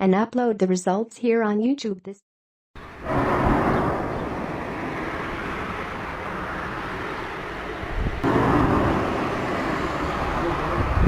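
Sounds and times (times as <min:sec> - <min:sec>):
wind: 0:02.8 - 0:11.0
low rumble: 0:08.1 - 0:11.0.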